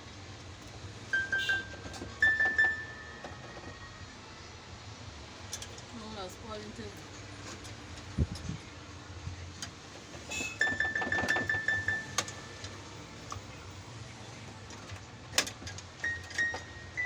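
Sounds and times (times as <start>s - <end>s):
electronic keyboard high notes: 1.1s - 4.0s.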